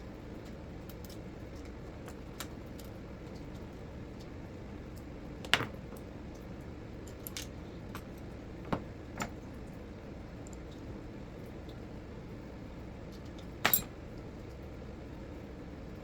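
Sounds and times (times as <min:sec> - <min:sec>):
small parts clicking and tapping: 0:07.0 - 0:09.5, 0:13.2 - 0:13.9.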